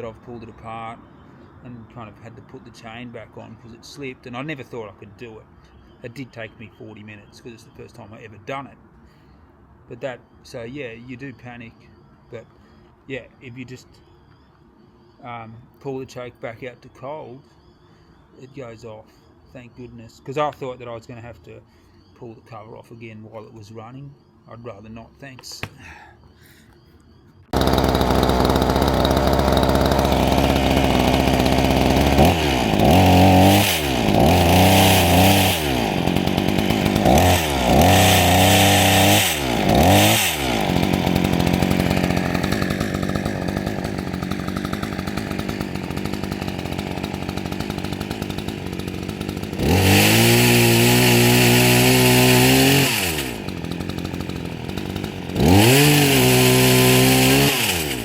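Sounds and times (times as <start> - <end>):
chainsaw engine revving: 27.6 - 58.0.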